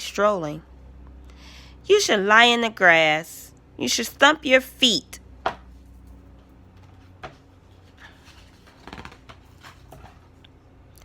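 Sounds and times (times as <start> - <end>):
low room hum: 0.0 - 11.0
paper pages rustling: 6.7 - 10.4.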